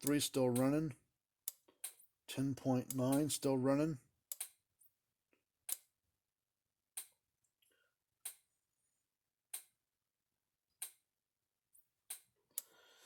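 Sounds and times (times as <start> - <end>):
electric fence charger ticking: 0.0 - 4.6.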